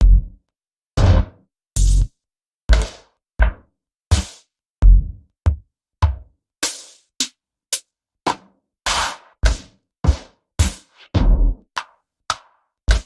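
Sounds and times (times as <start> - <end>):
booming drum machine kicks: 0.0 - 0.4, 1.0 - 2.1, 2.7 - 6.2, 9.4 - 11.6.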